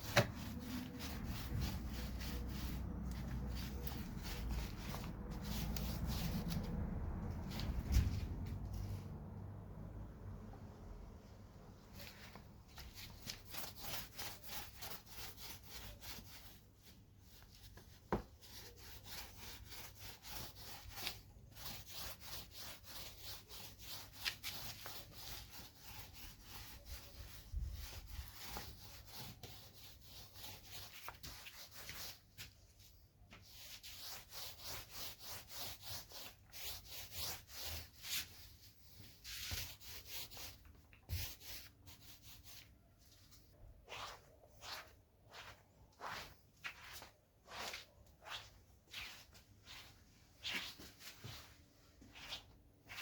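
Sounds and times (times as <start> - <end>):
hand sanding wood: 0.0 - 8.4, 12.9 - 16.6, 18.2 - 32.2, 33.4 - 42.7.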